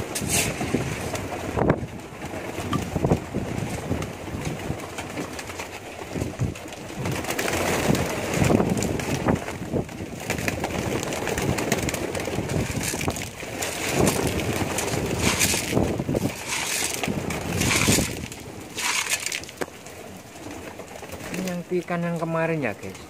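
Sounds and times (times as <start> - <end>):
short rustling bursts: 0.0 - 1.3, 12.5 - 19.6
pigeons cooing: 10.5 - 21.7.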